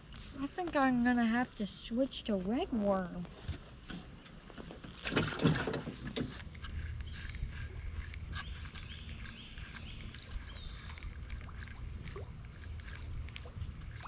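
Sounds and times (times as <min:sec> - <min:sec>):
low steady rumble: 0:00.0 - 0:14.0
birds chirping: 0:05.8 - 0:12.8.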